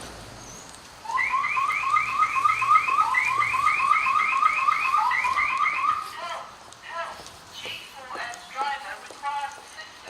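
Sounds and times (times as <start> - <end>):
vehicle alarm electronic chirps: 0.4 - 6.3.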